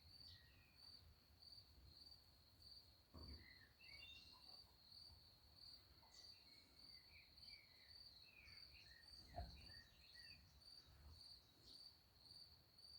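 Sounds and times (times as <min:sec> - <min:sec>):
faint bird chirps: 0:03.2 - 0:05.0, 0:05.7 - 0:12.0.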